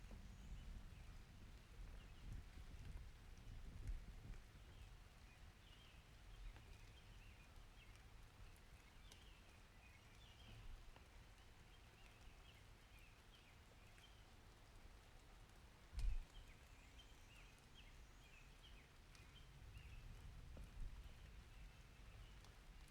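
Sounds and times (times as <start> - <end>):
small birds chirping: 4.6 - 14.6, 16.0 - 22.8.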